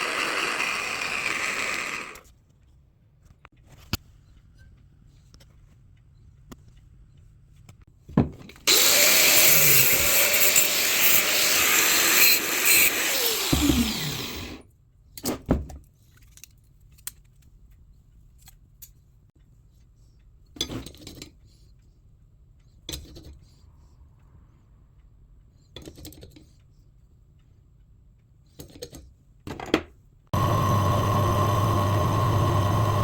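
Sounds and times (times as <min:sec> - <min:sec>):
power tool whining: 0:00.0 - 0:02.2, 0:08.7 - 0:14.6, 0:30.4 - 0:33.0.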